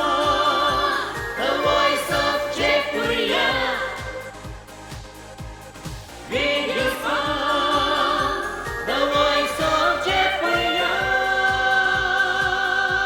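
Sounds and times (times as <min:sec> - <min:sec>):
steady drum beat: 0:00.0 - 0:13.0.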